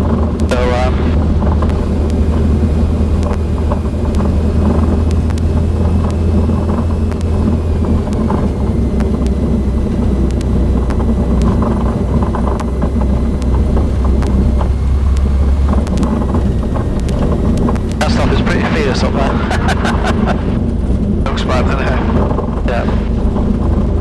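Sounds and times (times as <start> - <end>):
faint high whine: 0.0 - 20.6
aircraft piston engine droning: 0.0 - 20.7
light clicks: 1.6 - 18.1.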